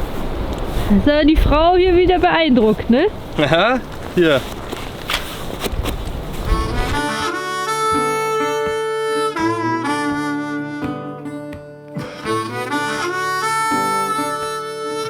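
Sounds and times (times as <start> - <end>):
guitar: 6.4 - 15.0
harmonica melody: 6.4 - 15.0.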